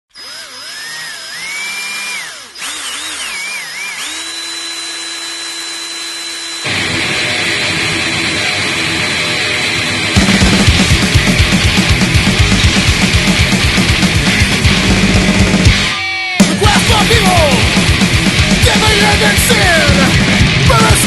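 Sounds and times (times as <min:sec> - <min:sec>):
loud rasping noise: 0:00.1 - 0:07.2
power drill whining: 0:00.1 - 0:21.0.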